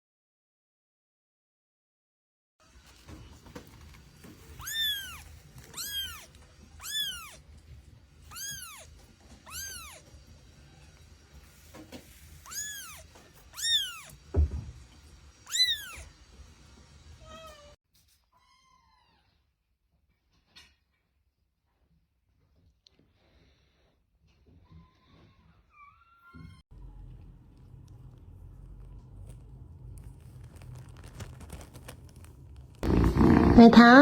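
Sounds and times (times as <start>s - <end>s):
kitten meowing: 4.5s - 7.4s, 8.3s - 10.0s, 12.4s - 14.2s, 15.4s - 16.1s.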